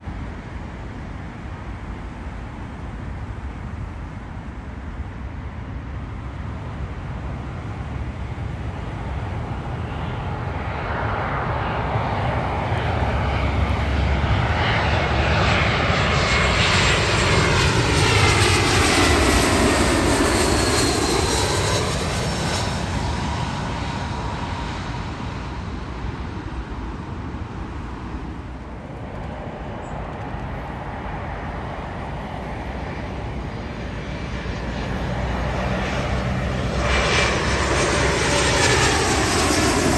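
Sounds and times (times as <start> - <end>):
jet airliner passing: 0.1 - 39.9.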